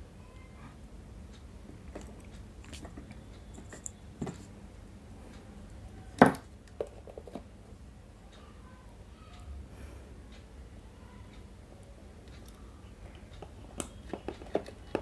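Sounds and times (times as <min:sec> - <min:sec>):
hands handling wires and tools: 0:01.8 - 0:04.5.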